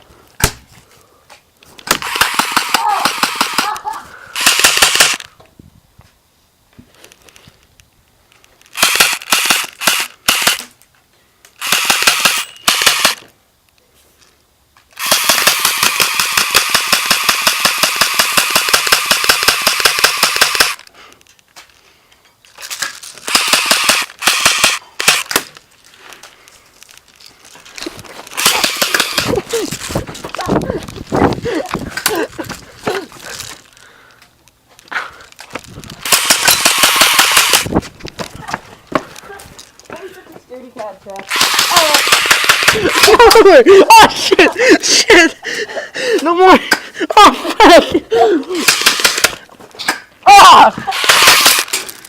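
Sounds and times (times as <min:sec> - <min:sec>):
airsoft guns firing bursts: 0:01.9 - 0:03.7, 0:04.4 - 0:05.2, 0:08.8 - 0:10.6, 0:11.6 - 0:13.2, 0:15.0 - 0:20.8, 0:23.2 - 0:25.4, 0:28.4 - 0:29.4, 0:36.0 - 0:37.7, 0:41.3 - 0:43.4, 0:48.6 - 0:49.4, 0:50.9 - 0:51.7.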